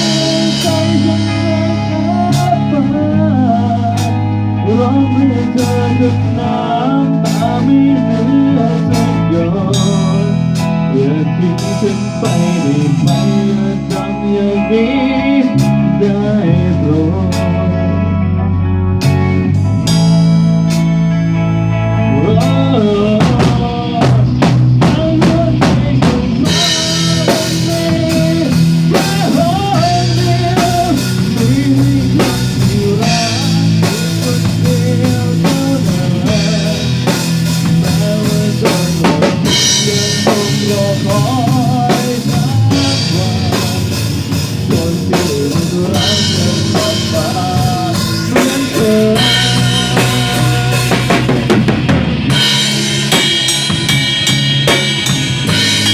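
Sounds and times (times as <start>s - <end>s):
pop-rock band instrumental: 0.0s - 55.9s
drum fill: 23.2s - 55.9s.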